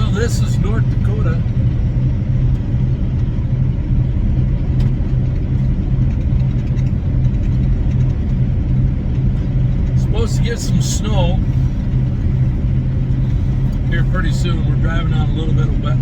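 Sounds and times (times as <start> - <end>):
truck diesel engine droning: 0.0 - 16.0.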